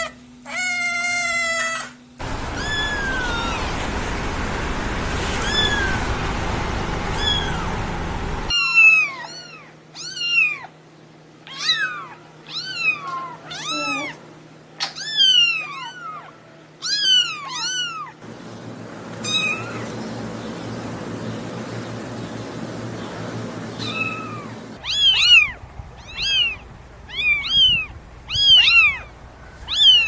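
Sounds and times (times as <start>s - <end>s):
steady hiss: 2.2s - 8.5s
kittens meowing: 11.5s - 14.2s, 14.8s - 18.2s, 23.8s - 29.1s, 29.7s - 30.0s.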